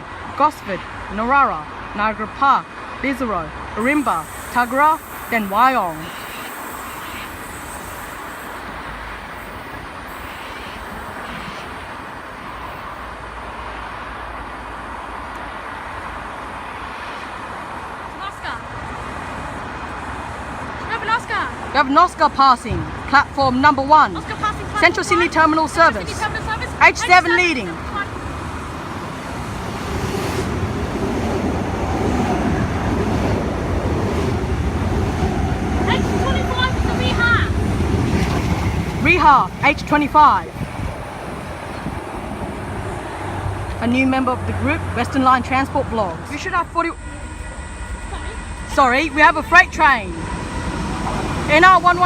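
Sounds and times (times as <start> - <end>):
electric train rumbling: 0.0 - 52.0
humming tone: 46.2 - 52.0.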